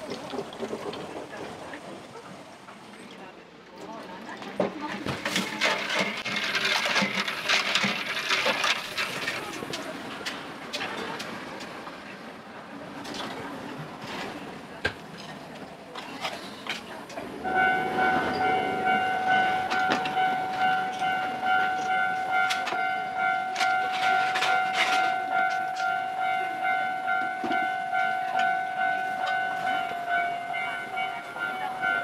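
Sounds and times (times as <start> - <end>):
clicks and clatter: 4.6 - 11.8
level crossing alarm bell: 17.4 - 32.0.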